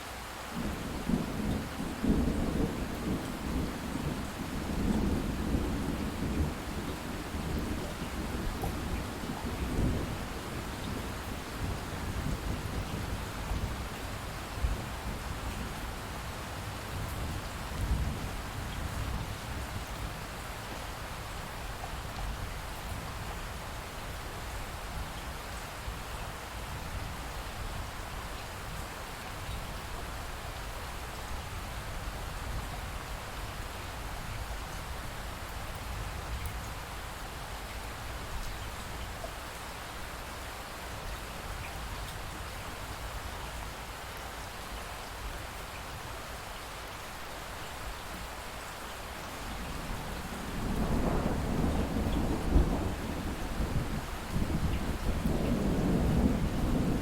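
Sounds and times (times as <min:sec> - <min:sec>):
light rain dripping: 0:00.0 - 0:57.0
distant thunder rumble: 0:49.4 - 0:57.0.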